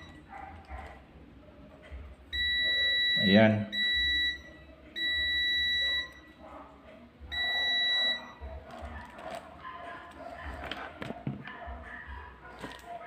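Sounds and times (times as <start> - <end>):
continuity tester beeping: 0.0 - 0.2, 2.3 - 6.4, 7.2 - 8.6.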